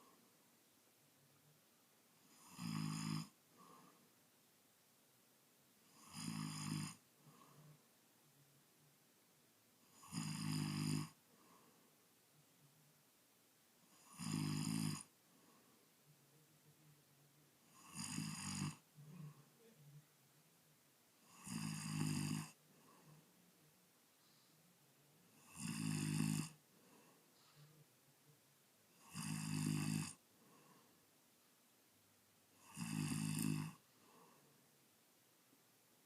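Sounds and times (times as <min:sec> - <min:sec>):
man snoring loudly: 0:02.3 - 0:03.4, 0:05.9 - 0:07.0, 0:09.9 - 0:11.2, 0:13.9 - 0:15.1, 0:17.7 - 0:18.8, 0:21.3 - 0:22.6, 0:25.4 - 0:26.6, 0:29.0 - 0:30.2, 0:32.6 - 0:33.8.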